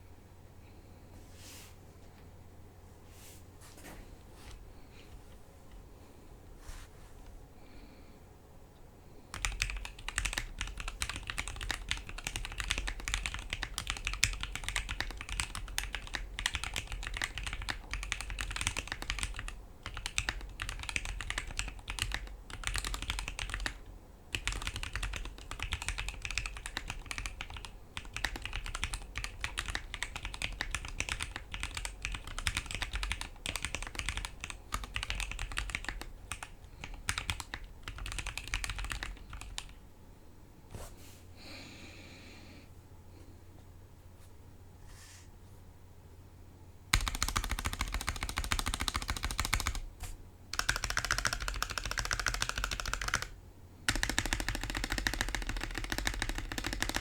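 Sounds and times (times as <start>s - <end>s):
mechanical keyboard typing: 9.3s - 39.8s, 46.9s - 49.9s, 50.5s - 57.0s.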